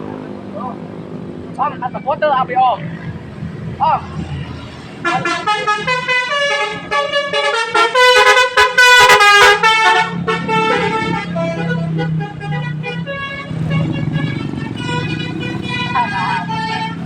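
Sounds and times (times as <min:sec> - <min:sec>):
bus engine hum: 0:00.0 - 0:17.0
multi-tone bus horn melody: 0:05.0 - 0:17.0.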